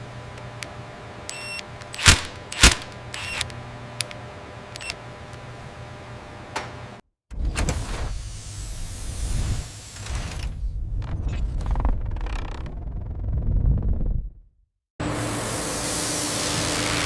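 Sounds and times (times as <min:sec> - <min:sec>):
low machine hum: 0:00.0 - 0:07.0
short electronic beeps: 0:01.3 - 0:01.6.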